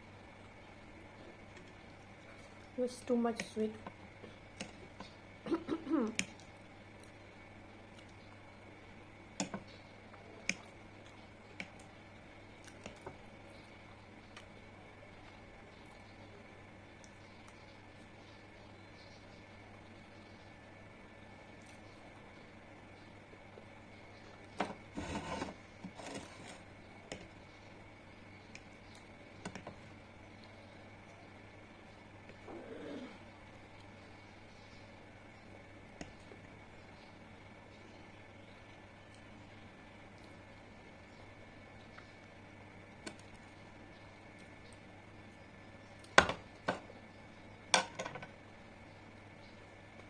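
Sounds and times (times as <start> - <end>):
eating and food handling: 0.0 - 50.0
low steady hum: 0.0 - 50.0
tableware clinking: 47.8 - 48.3.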